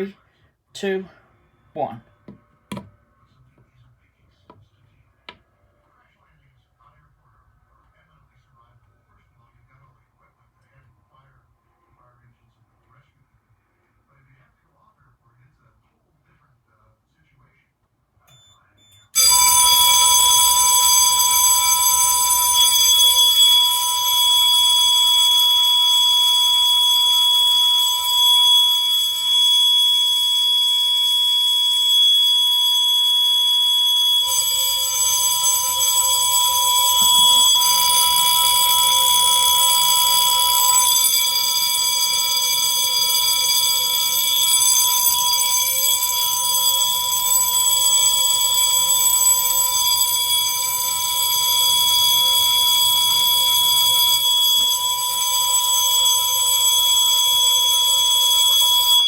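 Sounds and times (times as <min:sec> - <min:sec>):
fire alarm bell ringing: 0:18.3 - 0:59.0
piezo alarm sounder: 0:19.1 - 0:59.0.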